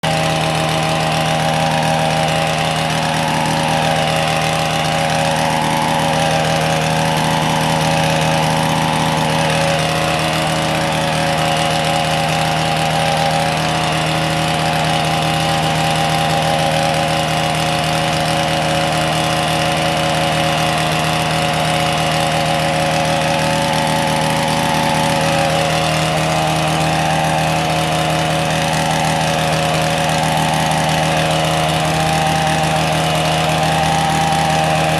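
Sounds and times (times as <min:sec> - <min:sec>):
small engine running steadily: 0:00.0 - 0:34.9.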